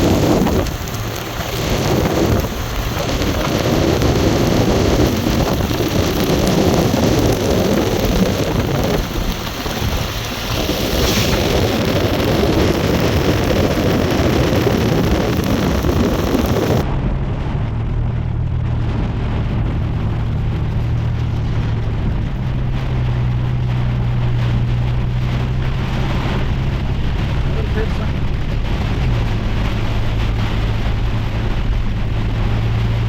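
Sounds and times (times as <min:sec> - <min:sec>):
heavy rain: 0:00.0 - 0:33.0.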